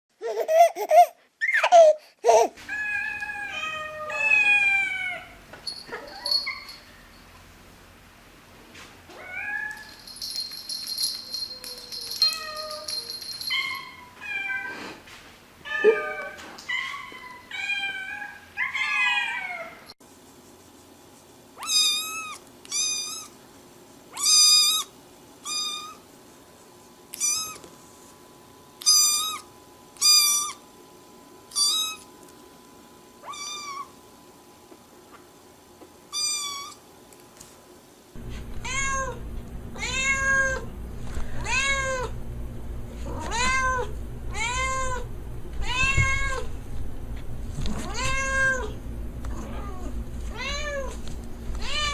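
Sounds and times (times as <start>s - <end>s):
cats meowing: 2.6s - 6.7s, 15.7s - 19.9s, 38.6s - 39.2s, 39.8s - 40.6s, 41.4s - 42.1s, 43.1s - 46.5s, 47.7s - 51.0s, 51.6s - 51.9s.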